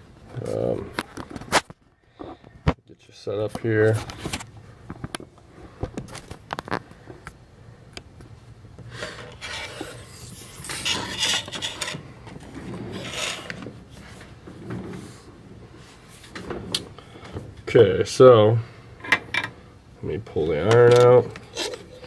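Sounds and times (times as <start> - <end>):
rubbing and scraping: 8.9 - 17.7, 20.4 - 22.0.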